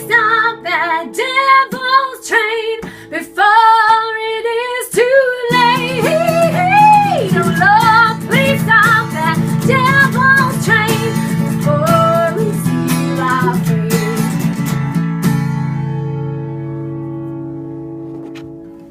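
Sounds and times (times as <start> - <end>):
woman singing with vibrato: 0.0 - 14.6
strummed acoustic guitar: 0.0 - 18.9.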